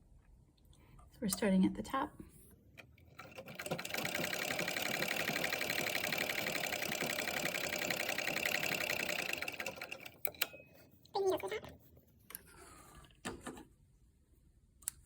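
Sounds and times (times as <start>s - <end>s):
sewing machine stitching: 2.9s - 10.6s.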